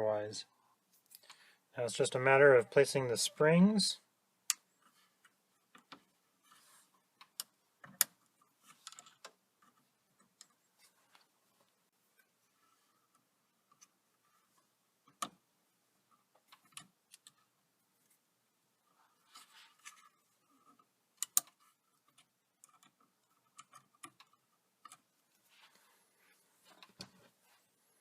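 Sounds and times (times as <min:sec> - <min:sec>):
small parts clicking and tapping: 0:07.2 - 0:11.3, 0:16.3 - 0:17.5, 0:19.7 - 0:25.1.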